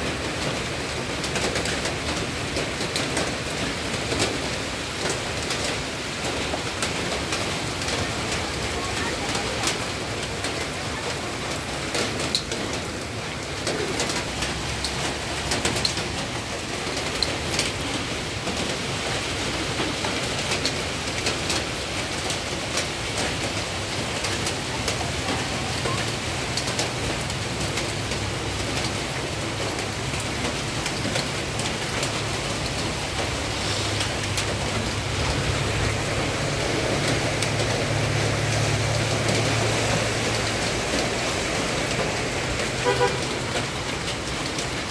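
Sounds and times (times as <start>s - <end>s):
heavy rain pattering: 0.0s - 44.9s
low vehicle engine hum: 32.5s - 44.8s.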